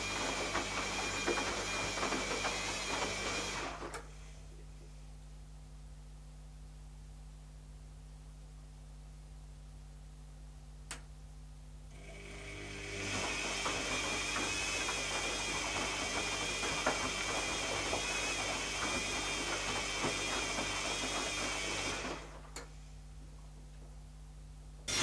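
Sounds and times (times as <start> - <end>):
washing machine motor whining: 0.0 - 4.2, 11.9 - 22.6.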